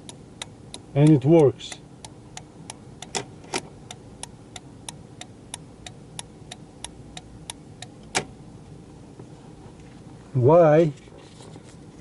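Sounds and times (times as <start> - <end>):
turn signal relay clicking: 0.0 - 8.3.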